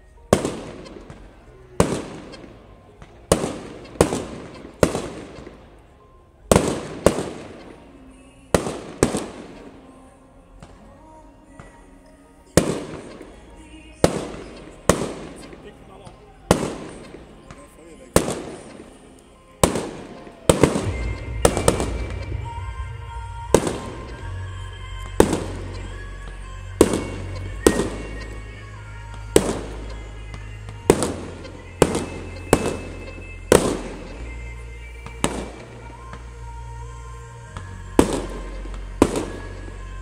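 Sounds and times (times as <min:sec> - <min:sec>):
fireworks bursting: 0:00.0 - 0:40.0
music with steady bass: 0:19.6 - 0:40.0.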